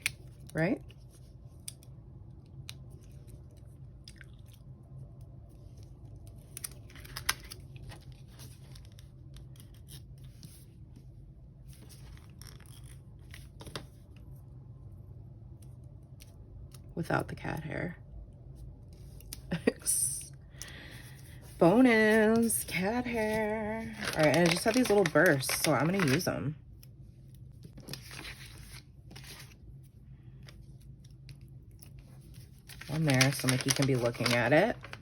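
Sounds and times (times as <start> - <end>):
paper rustling and crinkling: 5.6 - 10.7, 21.3 - 26.4, 27.6 - 35.0.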